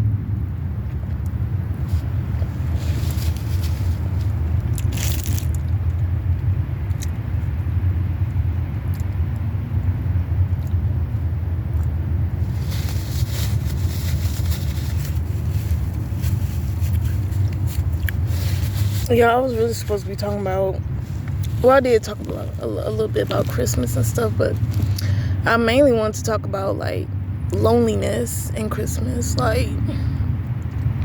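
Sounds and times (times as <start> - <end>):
steady low rumble: 0.0 - 31.0
chewing and crunching food: 2.5 - 7.6, 10.4 - 19.1.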